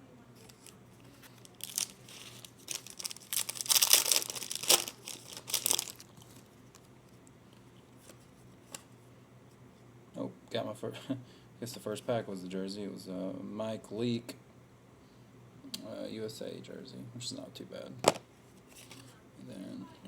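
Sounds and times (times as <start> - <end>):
plastic wrapper tearing and crinkling: 0.4 - 6.9.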